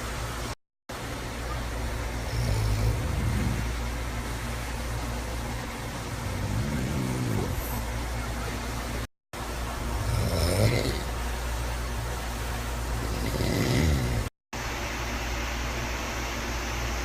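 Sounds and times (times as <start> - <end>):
person snoring: 2.2 - 3.8, 6.1 - 7.9, 10.0 - 11.1, 13.0 - 14.3.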